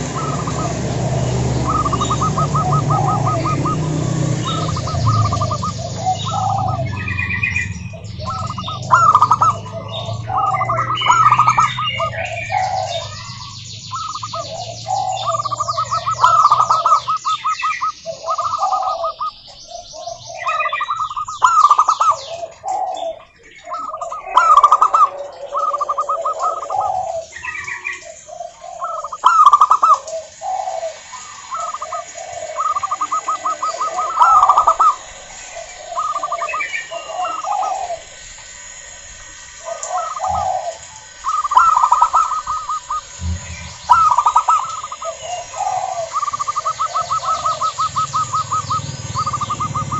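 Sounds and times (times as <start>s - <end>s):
low rumble: 0.0s - 16.2s, 42.9s - 45.6s
doves cooing: 0.0s - 49.9s
small birds chirping: 0.0s - 49.9s.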